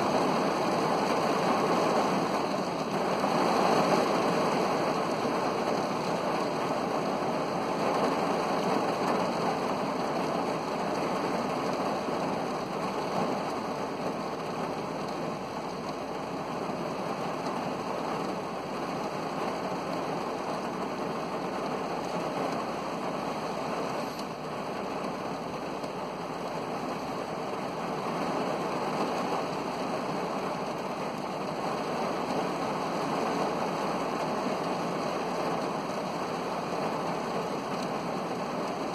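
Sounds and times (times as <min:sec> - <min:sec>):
heavy rain on a car: 0:00.0 - 0:38.9.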